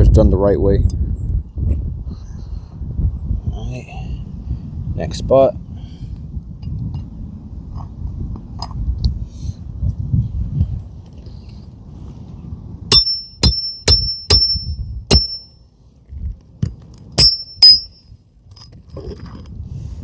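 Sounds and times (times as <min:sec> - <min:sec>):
hammer striking metal with ringing ping: 0:12.9 - 0:15.6, 0:17.2 - 0:18.0.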